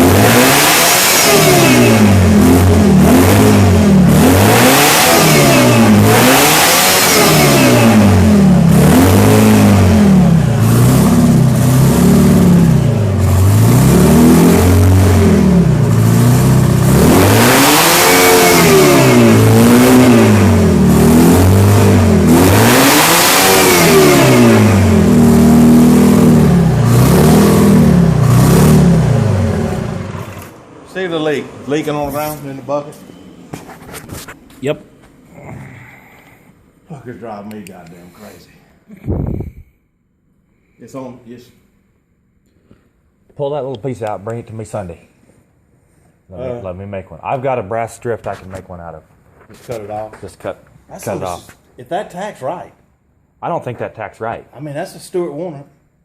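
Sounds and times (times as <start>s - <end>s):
tractor engine revving: 0.0s - 35.5s.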